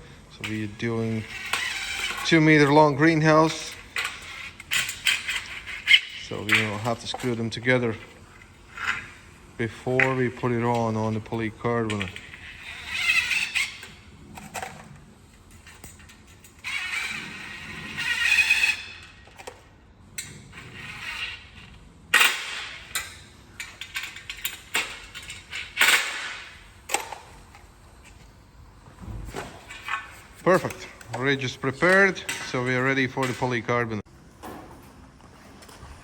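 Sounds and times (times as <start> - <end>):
parts clicking and clinking: 22.1 - 28.2.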